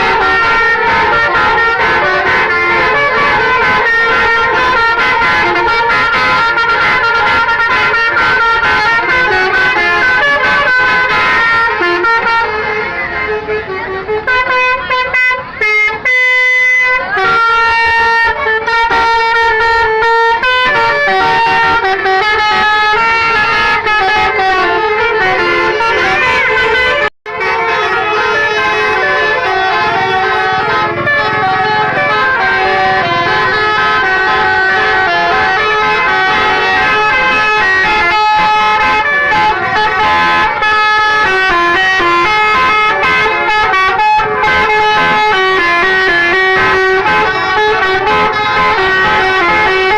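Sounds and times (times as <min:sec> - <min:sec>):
multi-tone bus horns playing tunes: 0:00.0 - 0:49.9.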